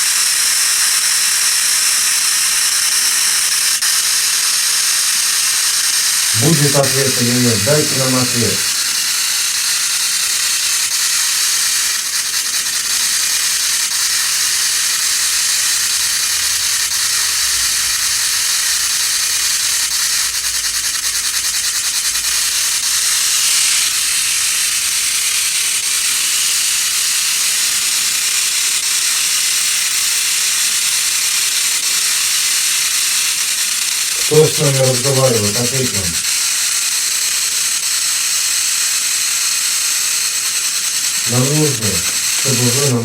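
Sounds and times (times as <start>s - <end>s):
radio static hiss: 6.3s - 9.0s, 34.2s - 36.4s, 41.1s - 43.0s
rapid static crackle: 6.3s - 9.0s, 34.2s - 36.5s, 41.0s - 43.0s.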